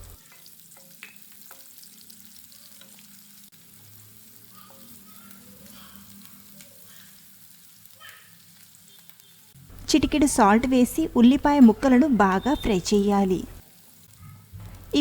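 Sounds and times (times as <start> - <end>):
onions sizzling in oil: 0.0 - 15.0.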